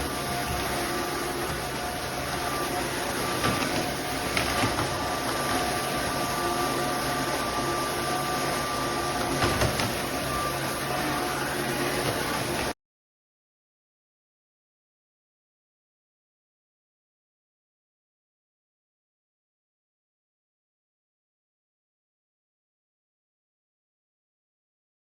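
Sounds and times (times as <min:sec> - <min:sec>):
vacuum mop motor whirring: 0:00.0 - 0:12.8.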